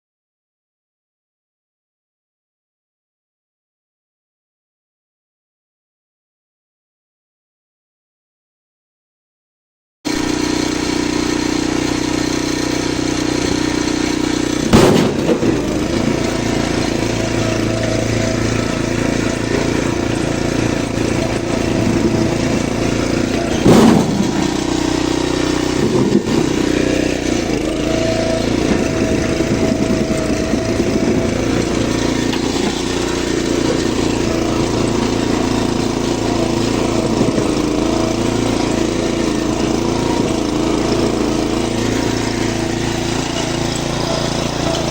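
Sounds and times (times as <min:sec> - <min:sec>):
small engine running: 0:10.1 - 0:44.9
loud thumps: 0:14.6 - 0:38.0.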